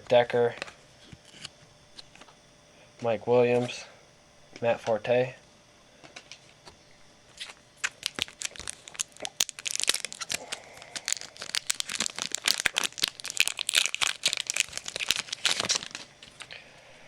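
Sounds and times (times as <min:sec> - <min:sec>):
wrapper being torn and crinkled: 0:07.4 - 0:16.5.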